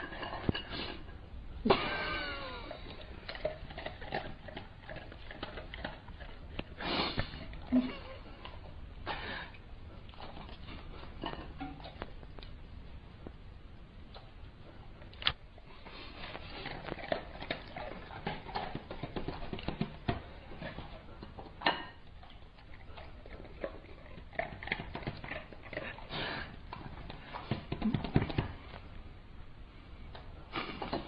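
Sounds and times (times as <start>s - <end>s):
dog chewing and smacking: 2.7s - 8.8s, 15.1s - 28.6s.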